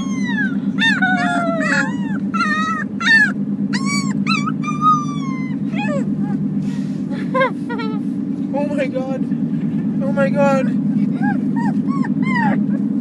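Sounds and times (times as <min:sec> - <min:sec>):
wolf pup squealing and yelping: 0:00.0 - 0:06.4, 0:11.0 - 0:13.0
steady low hum: 0:00.0 - 0:13.0.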